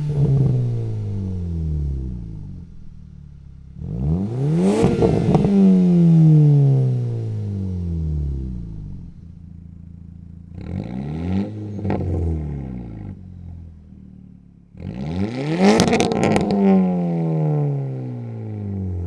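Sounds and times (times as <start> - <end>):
exhaust crackles: 0.0 - 10.8
car exhaust revving: 0.0 - 18.3.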